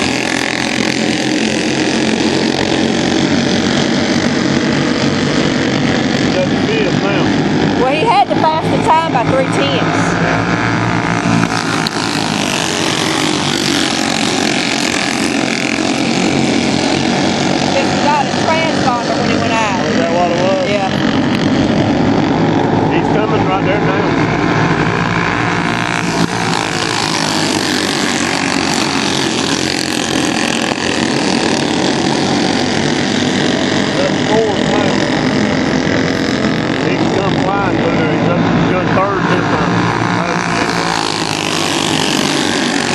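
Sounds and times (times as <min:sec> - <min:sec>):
race car engines droning: 0:00.0 - 0:42.9.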